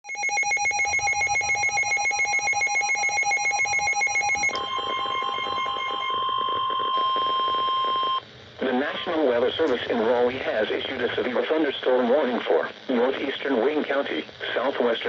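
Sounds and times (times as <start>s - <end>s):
pulsing electronic alarm: 0.0s - 8.2s.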